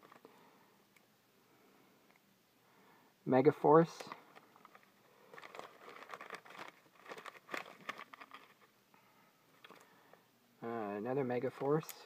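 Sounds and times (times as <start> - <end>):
packing wrap crinkling: 4.0 - 8.7.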